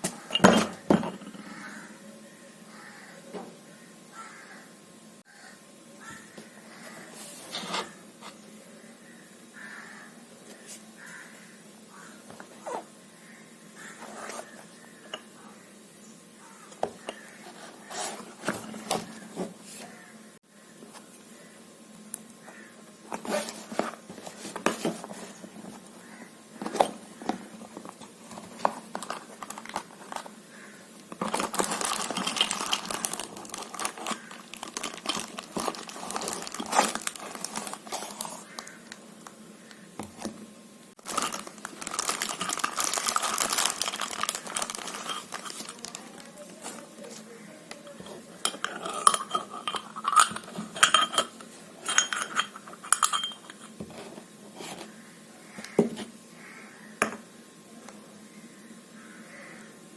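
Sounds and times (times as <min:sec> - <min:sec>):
rustling handling noise: 0:13.8 - 0:15.4, 0:16.5 - 0:20.1, 0:22.4 - 0:56.2
small metal pieces clinking: 0:31.3 - 0:37.6.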